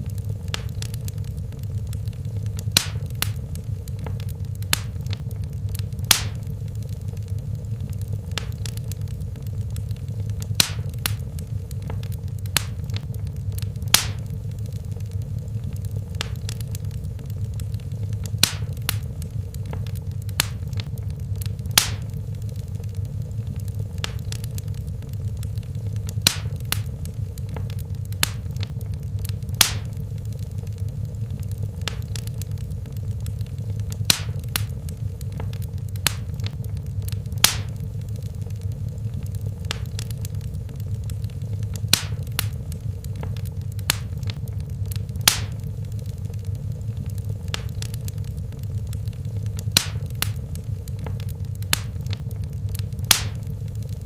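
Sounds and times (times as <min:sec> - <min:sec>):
fire crackles and pops: 0:00.0 - 0:54.0
fire low rumble: 0:00.0 - 0:54.0.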